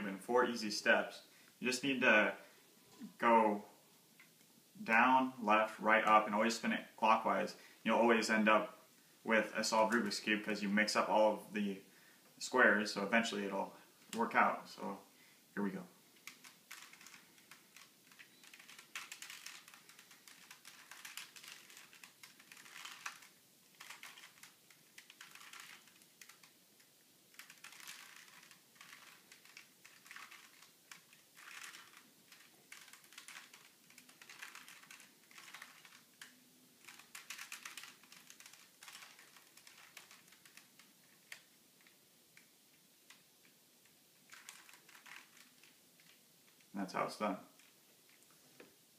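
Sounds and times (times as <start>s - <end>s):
puzzle cube layers clicking: 16.2s - 42.5s, 44.2s - 46.7s.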